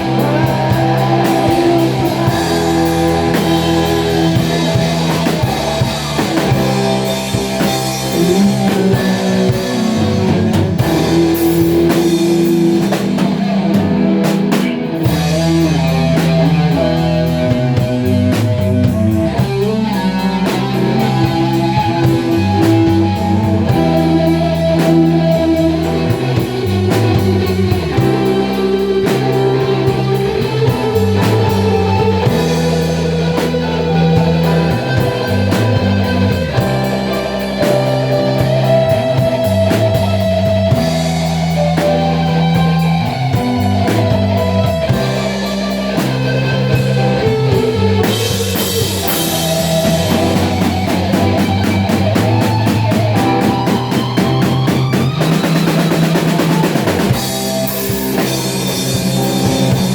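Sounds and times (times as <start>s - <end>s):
bass guitar: 0.0s - 59.9s
drum kit: 0.0s - 59.9s
electric guitar chords: 0.0s - 59.9s.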